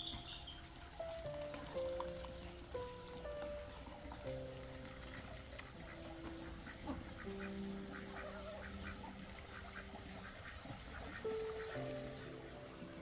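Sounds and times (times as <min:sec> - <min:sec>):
soft background music: 0:00.0 - 0:13.0
ducks quacking: 0:02.7 - 0:13.0.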